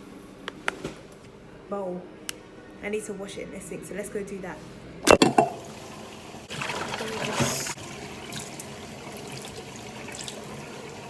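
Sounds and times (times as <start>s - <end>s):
bowl rinsed under water: 5.1s - 11.0s
tap water running into sink: 5.1s - 11.0s.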